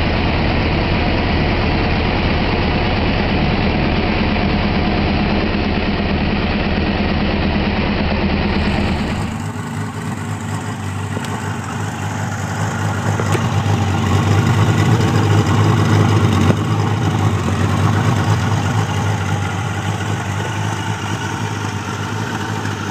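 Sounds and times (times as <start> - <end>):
motorcycle engine running: 0.0 - 22.9.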